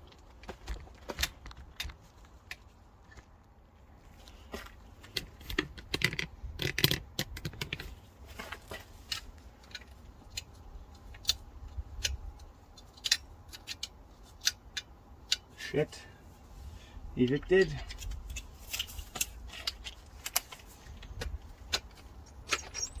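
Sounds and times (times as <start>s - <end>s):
metal tools clinking: 21.8s - 23.0s.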